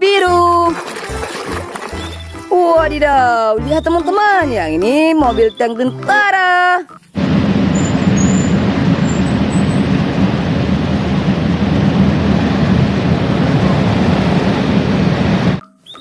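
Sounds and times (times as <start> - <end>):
water rushing and splashing: 0.2 - 2.6.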